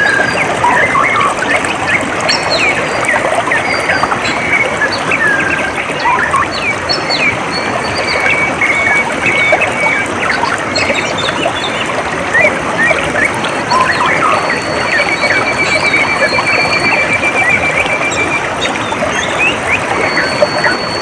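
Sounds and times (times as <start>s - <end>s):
small birds chirping: 0.0s - 21.0s
water trickling: 0.0s - 21.0s.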